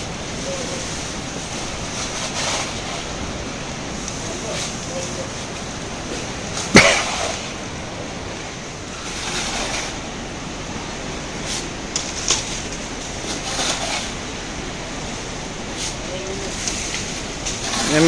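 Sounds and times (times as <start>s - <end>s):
river rushing: 0.0s - 18.0s.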